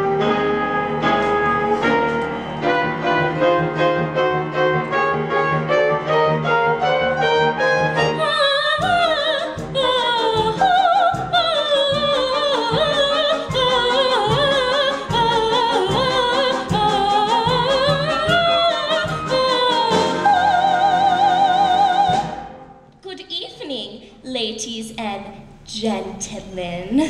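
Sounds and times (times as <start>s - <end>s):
orchestral accompaniment: 0.0s - 22.9s
operatic soprano singing: 8.0s - 22.6s.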